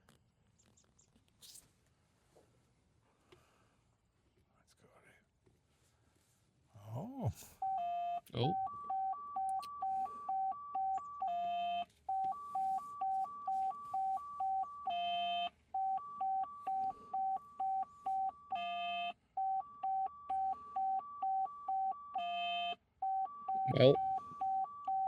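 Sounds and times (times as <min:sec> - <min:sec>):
two-note electronic warning beep: 0:07.6 - 0:25.0.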